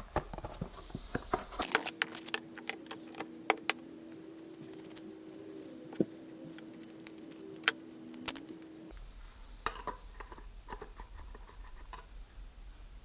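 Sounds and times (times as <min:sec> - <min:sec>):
steady hum: 0:01.6 - 0:08.9.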